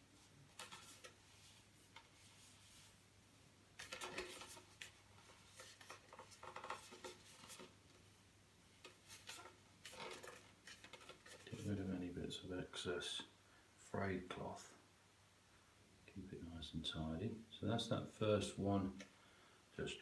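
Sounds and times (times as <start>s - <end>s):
light rubbing of cloth: 0.0s - 3.4s.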